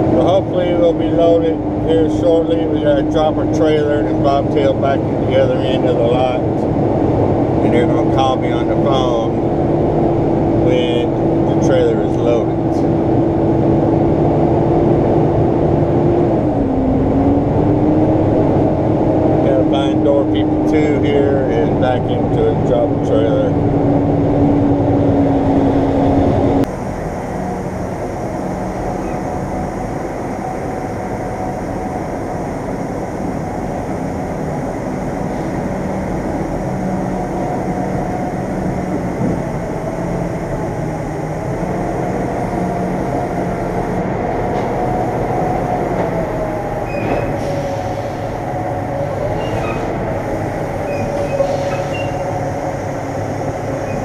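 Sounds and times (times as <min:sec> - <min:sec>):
diesel truck engine running: 0:00.0 - 0:54.0.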